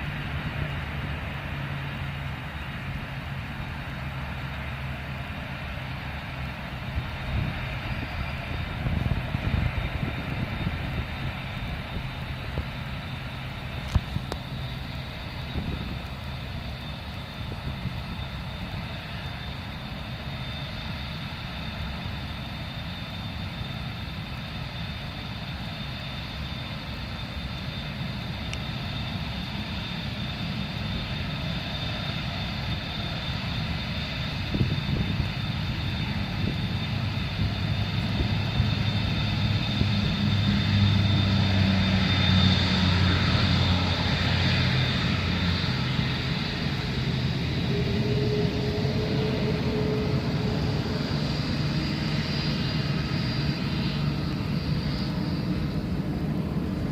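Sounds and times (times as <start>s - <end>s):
jet engines whining and rumbling: 0.0s - 56.9s.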